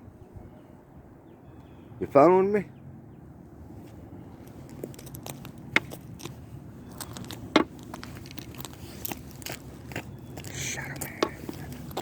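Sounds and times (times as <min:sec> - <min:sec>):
footsteps crunching on dry ground: 0:03.8 - 0:12.0.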